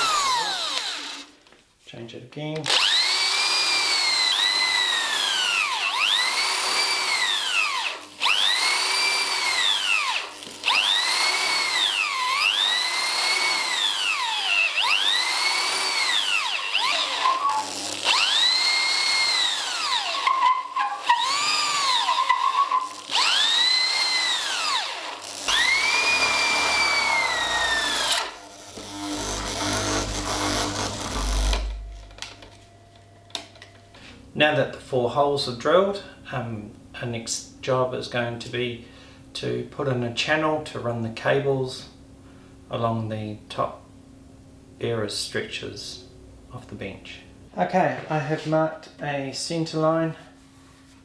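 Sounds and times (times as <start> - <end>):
power drill whining: 0.0 - 1.4, 2.7 - 32.6.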